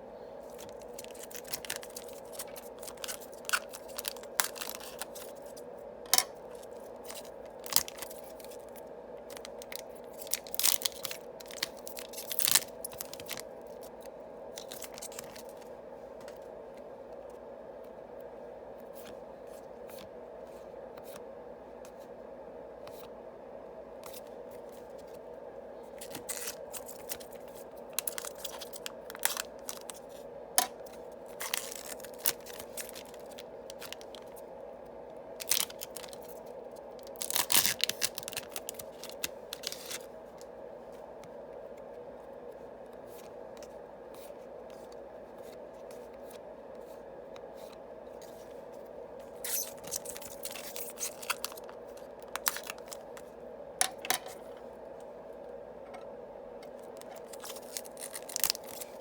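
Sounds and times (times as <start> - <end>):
low room hum: 0.0 - 59.0
foil wrappers crinkling and tearing: 0.4 - 15.6, 26.0 - 34.4, 35.4 - 40.1, 49.3 - 54.4, 56.8 - 59.0
cards clicking and rustling: 0.5 - 14.0, 14.6 - 16.4, 26.0 - 34.3, 49.4 - 54.6, 56.7 - 59.0.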